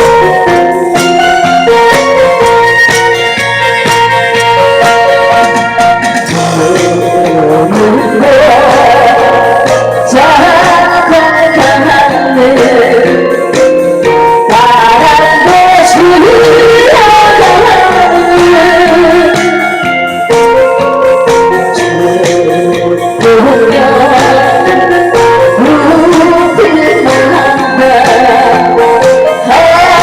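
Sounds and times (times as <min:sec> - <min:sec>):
instrumental backing music: 0:00.0 - 0:30.0
woman singing: 0:06.2 - 0:19.8, 0:21.6 - 0:30.0.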